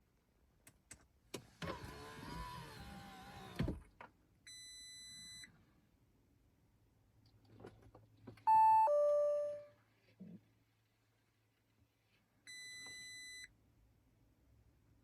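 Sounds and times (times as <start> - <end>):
electronic warning chime: 8.5 - 9.7.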